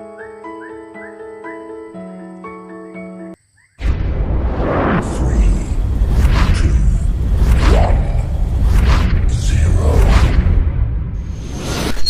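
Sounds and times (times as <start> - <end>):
background music: 0.0 - 3.4
loud noise with deep rumble: 3.8 - 11.8.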